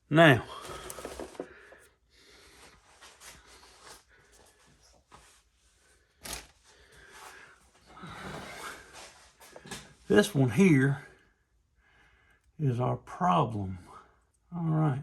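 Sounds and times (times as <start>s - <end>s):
small parts clicking and rustling: 0.6s - 1.9s, 6.2s - 6.7s.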